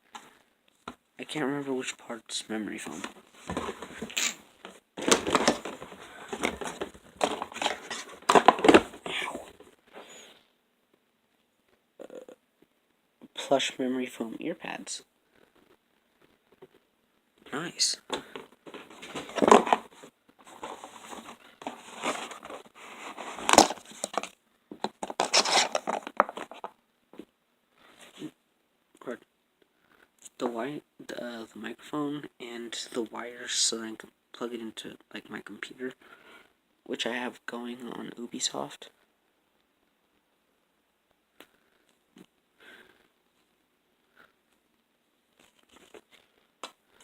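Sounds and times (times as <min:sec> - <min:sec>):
packaging crinkling and rustling: 0:05.0 - 0:09.2, 0:18.6 - 0:26.8, 0:45.3 - 0:46.4.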